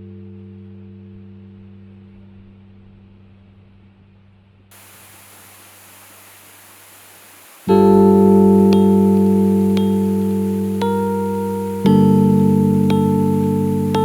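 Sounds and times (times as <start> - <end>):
steady hiss: 4.7 - 14.0
low background music notes: 7.7 - 14.0.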